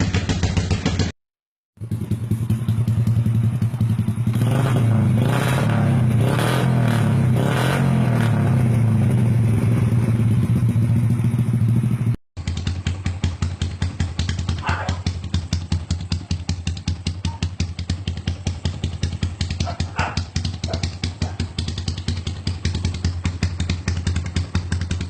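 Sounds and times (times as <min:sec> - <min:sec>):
motorcycle idling and revving: 0:00.0 - 0:01.2, 0:01.8 - 0:25.0
engine idling: 0:01.8 - 0:04.6, 0:08.6 - 0:25.0.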